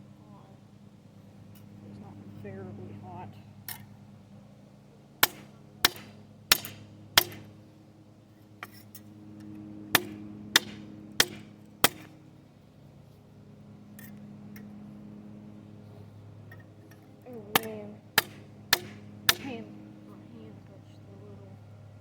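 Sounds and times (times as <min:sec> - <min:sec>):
hammer striking metal: 0:05.2 - 0:07.5, 0:09.9 - 0:12.1, 0:17.5 - 0:19.5.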